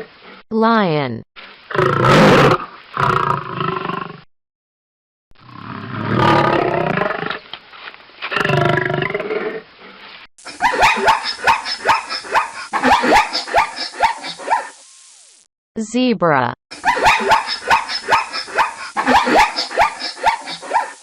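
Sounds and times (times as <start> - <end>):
lion roaring: 1.7 - 4.2, 5.4 - 7.4.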